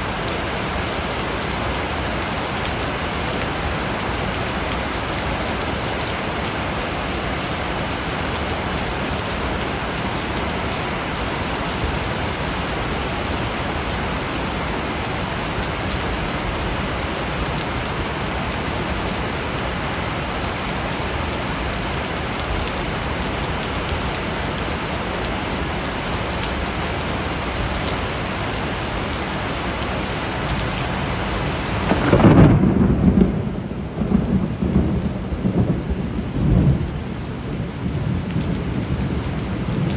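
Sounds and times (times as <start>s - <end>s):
heavy rain hissing: 0.0s - 39.9s
thunder rumble: 31.6s - 39.9s.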